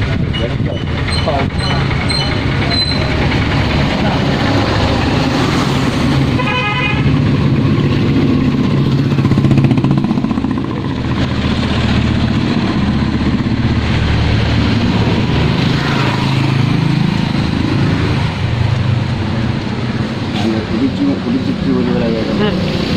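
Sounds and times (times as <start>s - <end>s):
vehicle engine running: 0.0s - 22.9s
horn toot: 6.3s - 7.2s.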